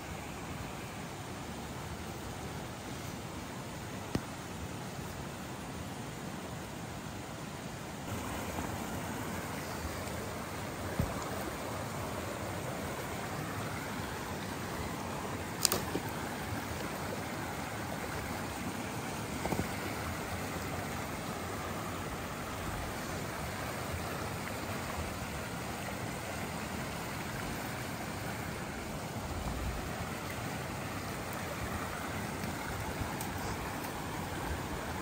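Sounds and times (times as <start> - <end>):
stream rushing: 0.0 - 35.0.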